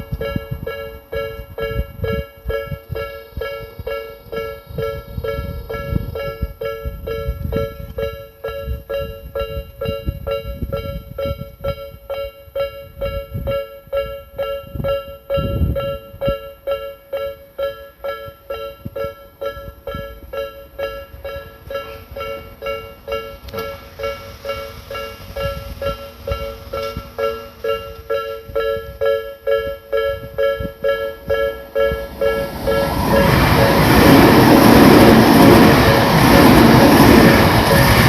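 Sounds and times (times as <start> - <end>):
level crossing warning bell: 0.0 - 38.0
low rumble: 30.6 - 38.0.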